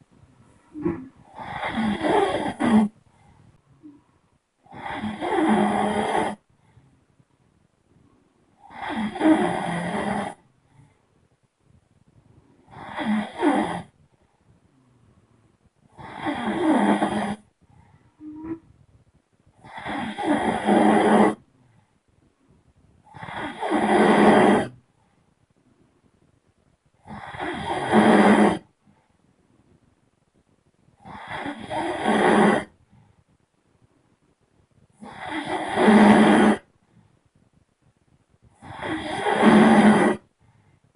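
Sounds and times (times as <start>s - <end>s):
person snoring: 0.7s - 3.0s, 4.7s - 6.4s, 8.6s - 10.4s, 12.7s - 13.9s, 15.9s - 17.4s, 19.6s - 21.4s, 23.1s - 24.8s, 27.0s - 28.7s, 31.0s - 32.7s, 35.0s - 36.7s, 38.6s - 40.3s.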